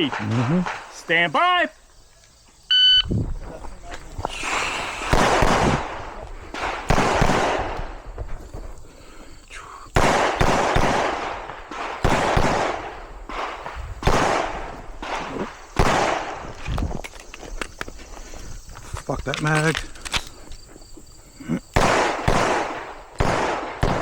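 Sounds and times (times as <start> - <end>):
pistol shots echoing: 5.0 - 8.0, 10.0 - 16.5, 21.8 - 24.0.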